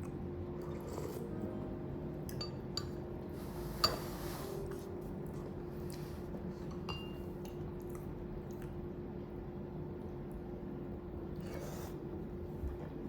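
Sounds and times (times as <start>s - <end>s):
steady low hum: 0.0s - 13.0s
tableware clinking: 6.8s - 7.3s.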